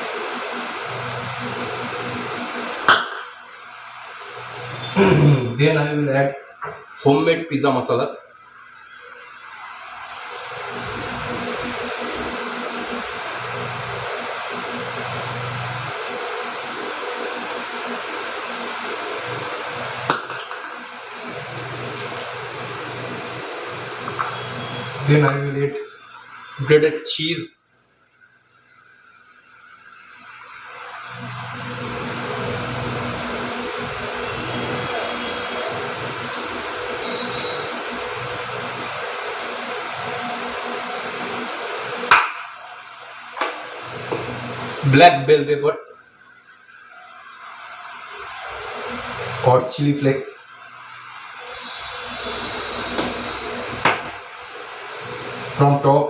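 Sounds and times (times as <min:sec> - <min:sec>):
electric motor whirring: 0:08.7 - 0:25.3, 0:28.8 - 0:45.0, 0:46.4 - 0:49.6, 0:50.5 - 0:55.7.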